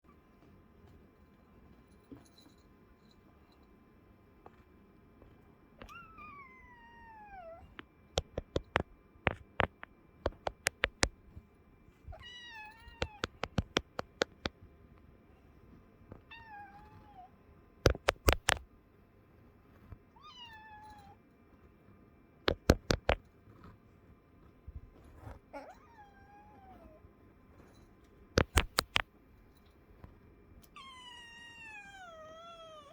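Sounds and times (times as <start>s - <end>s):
sharp clicks: 8.2s - 11.2s, 13.0s - 14.5s, 17.9s - 18.6s, 22.5s - 23.2s, 28.4s - 29.0s.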